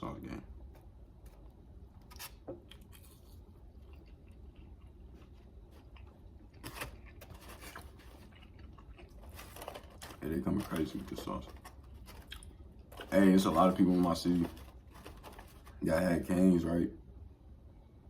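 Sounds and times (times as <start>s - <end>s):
person chewing food: 2.0s - 10.2s, 11.5s - 13.1s.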